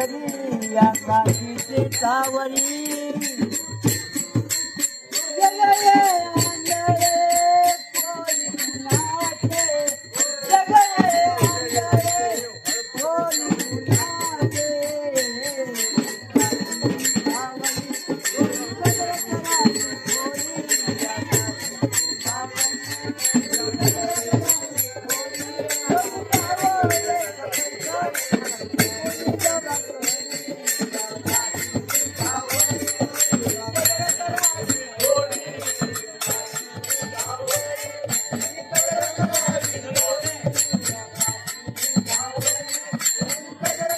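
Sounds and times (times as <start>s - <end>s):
jingling rattling percussion: 0.0s - 43.9s.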